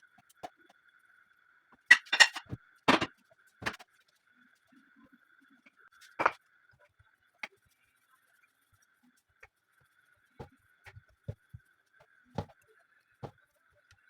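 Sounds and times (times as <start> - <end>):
utensils knocking and clicking: 1.9 - 3.1.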